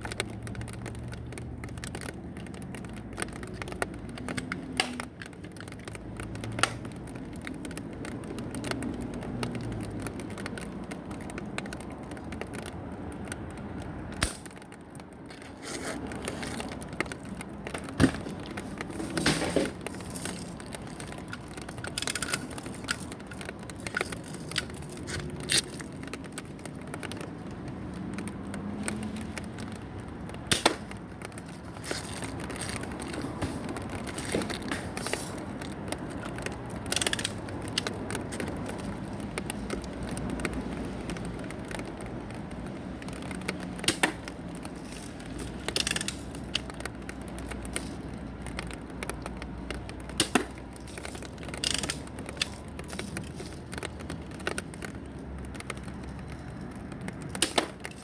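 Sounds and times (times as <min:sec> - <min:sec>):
sharp cracks: 0:00.0 - 0:58.0
air gun clicking and rattling: 0:11.1 - 0:28.3, 0:29.0 - 0:58.0.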